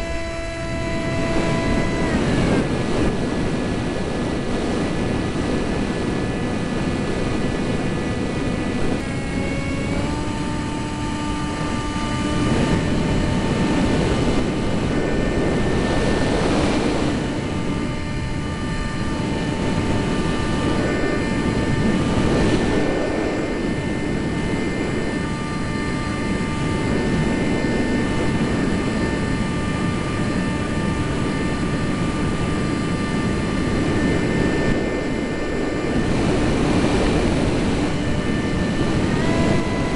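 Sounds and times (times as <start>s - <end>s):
jet engines whining: 0.0s - 39.9s
wind noise on microphone: 0.0s - 39.9s.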